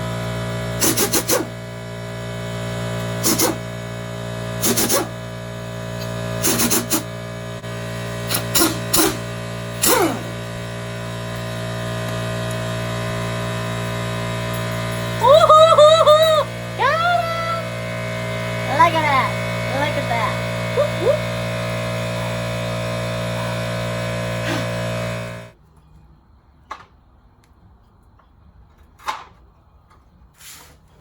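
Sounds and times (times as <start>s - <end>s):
pneumatic impact wrench bursts: 0.0s - 25.6s
steady hum: 0.0s - 25.6s.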